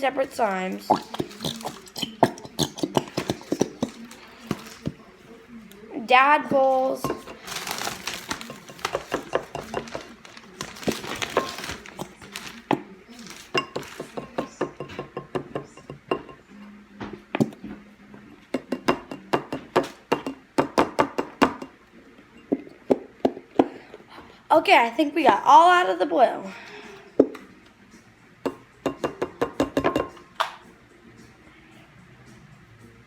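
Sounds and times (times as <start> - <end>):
slime scraping in a bowl: 0.8 - 5.0.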